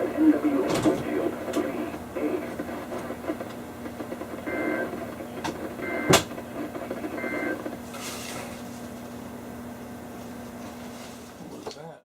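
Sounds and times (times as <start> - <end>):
light static: 0.0 - 7.8
steady low hum: 0.0 - 11.4
digital data tones: 4.4 - 5.0, 5.8 - 6.2.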